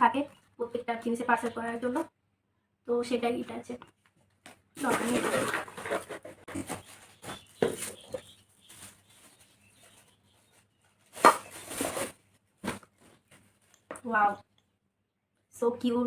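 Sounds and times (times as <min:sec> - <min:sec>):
packaging rustling and tapping: 0:04.8 - 0:09.0, 0:11.1 - 0:14.1.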